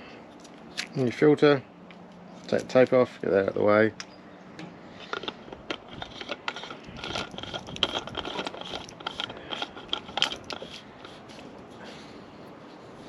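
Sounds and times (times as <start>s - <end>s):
fuel filter clicking and scraping: 4.9s - 12.1s.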